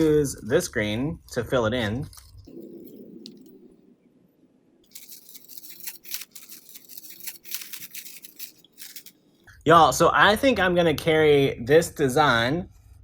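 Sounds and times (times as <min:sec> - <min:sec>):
artificial greenery rustling and crackling: 0:04.8 - 0:09.2.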